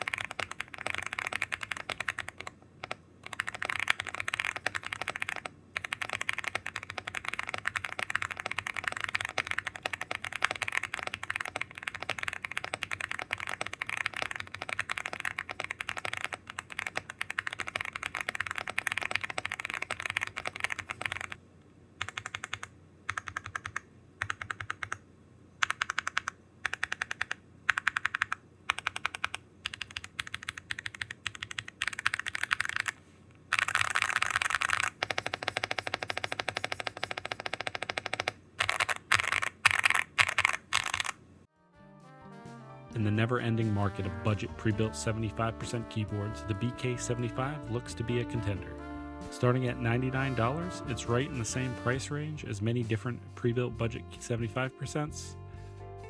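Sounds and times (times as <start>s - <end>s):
mechanical keyboard typing: 0.0s - 21.4s, 22.0s - 25.0s, 25.6s - 41.2s.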